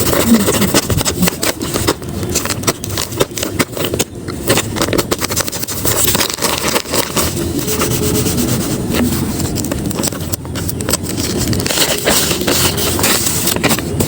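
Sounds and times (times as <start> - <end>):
paper and tape crinkling: 0.0 - 14.0.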